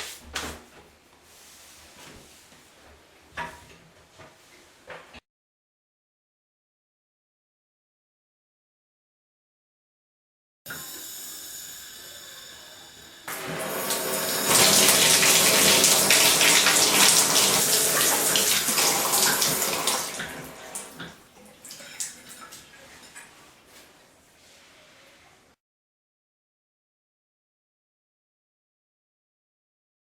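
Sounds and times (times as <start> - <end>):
shower spraying into tub: 10.7 - 22.6
water dripping: 13.3 - 23.4.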